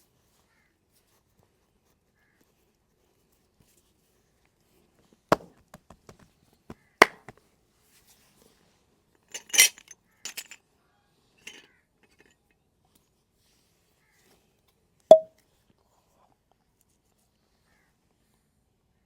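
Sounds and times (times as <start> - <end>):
hands hitting body: 7.0 - 7.3.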